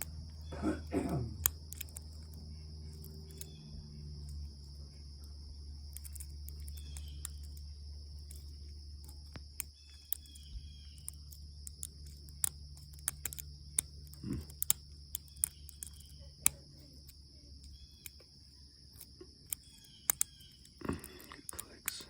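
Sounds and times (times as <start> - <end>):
metallic clicks of lock picking: 8.2 - 18.2, 18.9 - 21.6.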